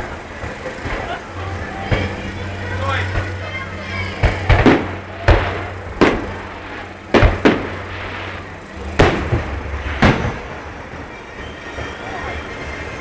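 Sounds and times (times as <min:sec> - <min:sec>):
fireworks bursting: 0:00.0 - 0:12.9.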